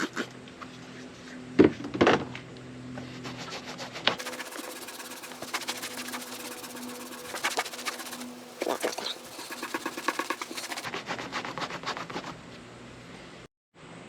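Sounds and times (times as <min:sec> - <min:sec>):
cloth scrubbing car surface: 0:04.2 - 0:10.9.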